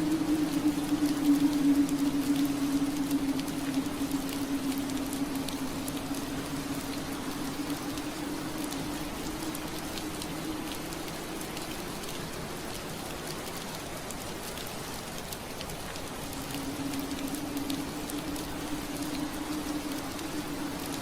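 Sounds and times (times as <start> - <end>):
low hum: 0.0 - 12.7
steady rain hissing: 0.0 - 21.0.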